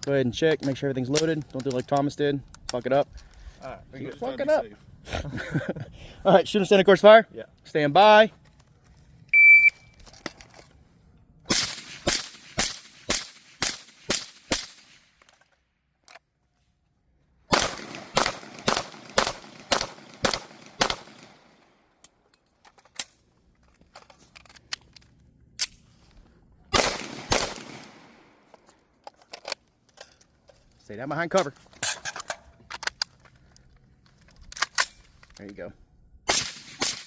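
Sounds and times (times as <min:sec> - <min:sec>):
shot timer beep: 0:09.4 - 0:09.9
rapid gunshots: 0:11.5 - 0:15.0, 0:17.5 - 0:21.4, 0:26.8 - 0:28.0.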